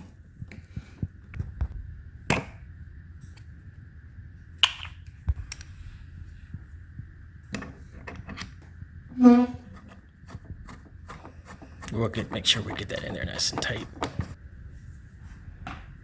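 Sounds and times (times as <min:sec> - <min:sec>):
parts clicking and knocking: 0:09.8 - 0:14.4.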